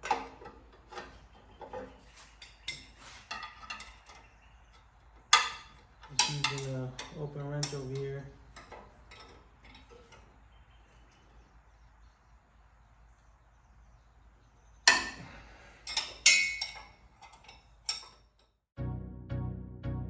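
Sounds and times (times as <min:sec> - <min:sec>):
faint tinkering: 0:00.0 - 0:18.6
metal wrench clanking: 0:02.4 - 0:10.3, 0:15.8 - 0:18.5.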